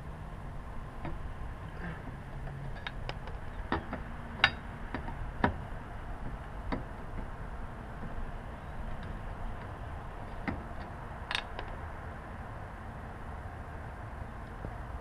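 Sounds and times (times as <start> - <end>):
metallic clicks and knocks: 2.1 - 5.6, 10.4 - 11.8.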